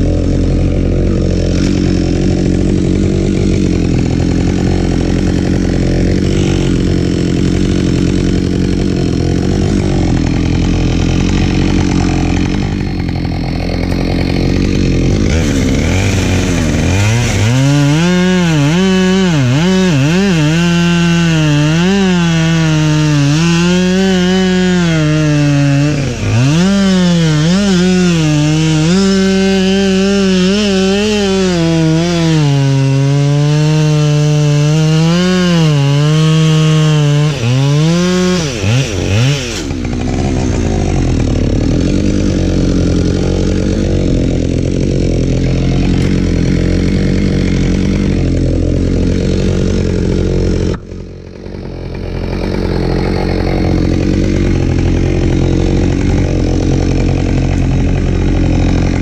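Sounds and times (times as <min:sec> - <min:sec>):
chainsaw running: 0:00.0 - 0:59.0.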